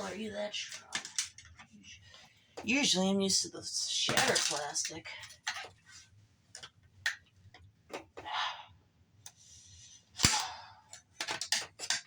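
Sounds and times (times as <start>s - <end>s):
plastic parts scraping and clicking: 0.7s - 1.7s, 10.9s - 12.0s.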